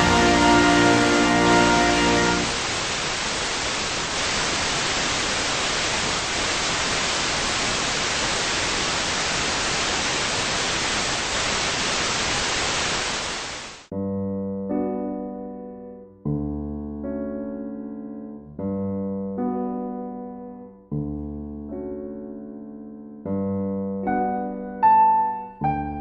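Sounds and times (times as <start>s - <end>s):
radio static hiss: 2.4s - 13.9s.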